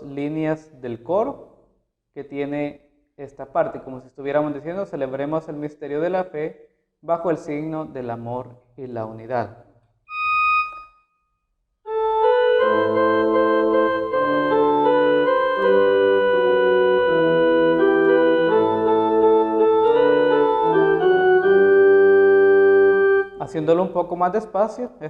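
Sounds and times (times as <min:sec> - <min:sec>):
electronic keyboard playing organ chords: 0:11.9 - 0:23.6.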